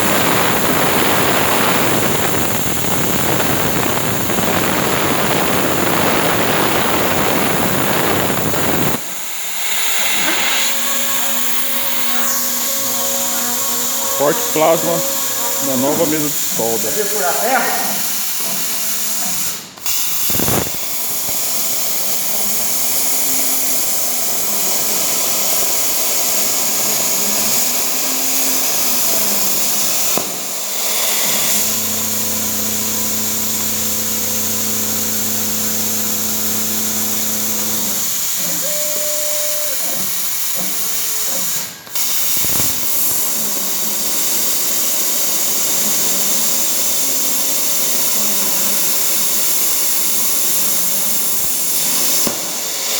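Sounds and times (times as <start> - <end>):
plasma cutter hissing: 0.0 - 52.9
low droning hum: 10.2 - 17.0.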